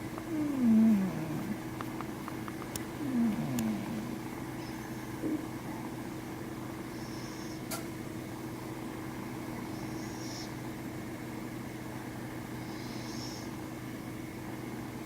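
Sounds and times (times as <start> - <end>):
steady room hum: 0.0 - 15.0
cat snoring: 0.2 - 1.7, 3.0 - 4.2.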